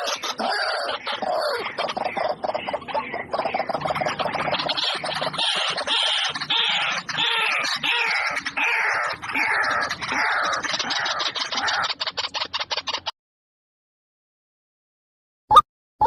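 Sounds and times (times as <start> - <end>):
birds calling harshly: 0.0 - 13.1.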